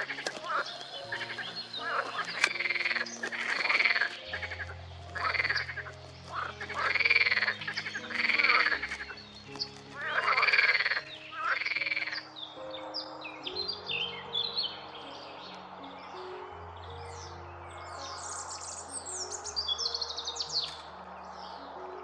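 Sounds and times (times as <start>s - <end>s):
frog croaks: 0.0s - 9.2s, 10.0s - 12.3s
bird chirping: 0.0s - 22.0s.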